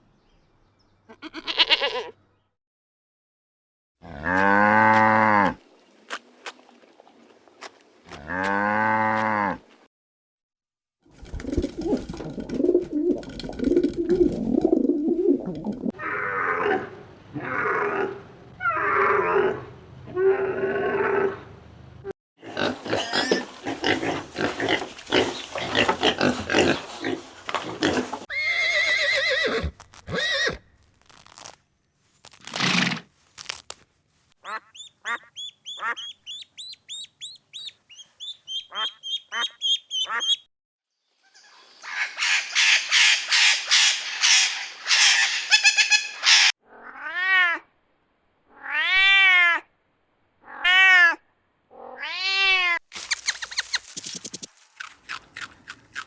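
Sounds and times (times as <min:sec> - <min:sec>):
animal grunting: 0:22.4 - 0:28.3
farm animals calling: 0:22.5 - 0:30.6, 0:34.4 - 0:40.5.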